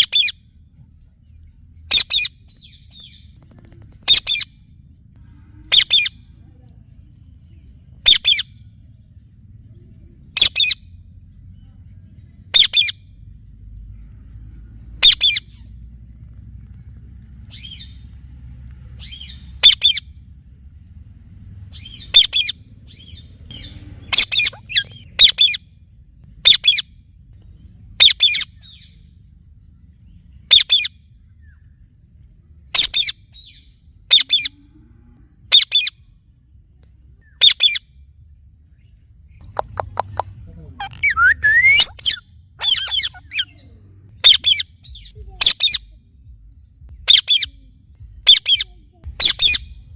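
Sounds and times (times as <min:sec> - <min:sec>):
parrot squawking: 0:00.0 - 0:00.3, 0:01.9 - 0:03.1, 0:04.1 - 0:04.6, 0:05.7 - 0:06.2, 0:08.0 - 0:08.5, 0:12.5 - 0:13.0, 0:15.0 - 0:15.6, 0:19.0 - 0:20.1, 0:21.8 - 0:25.6, 0:26.4 - 0:26.8, 0:30.5 - 0:30.9, 0:32.7 - 0:33.5, 0:37.4 - 0:37.8, 0:39.5 - 0:45.9, 0:47.1 - 0:47.6, 0:48.2 - 0:49.8
low background rumble: 0:00.0 - 0:49.9.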